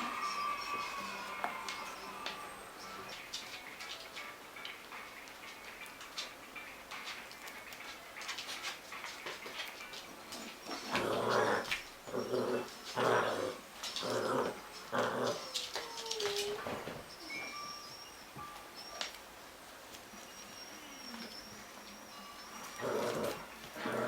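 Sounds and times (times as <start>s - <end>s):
faint clicks and taps: 3.1s - 11.9s.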